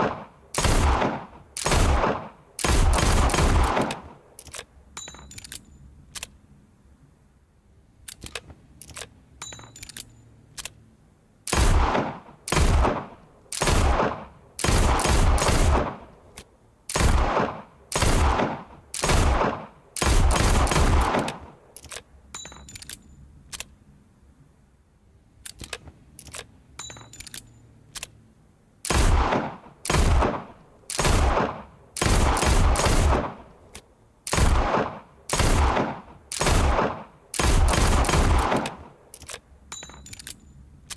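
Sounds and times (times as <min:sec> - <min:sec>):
revolver gunshots with echo: 0:00.0 - 0:04.2, 0:11.5 - 0:16.1, 0:16.9 - 0:21.6, 0:28.9 - 0:33.5, 0:34.3 - 0:39.0.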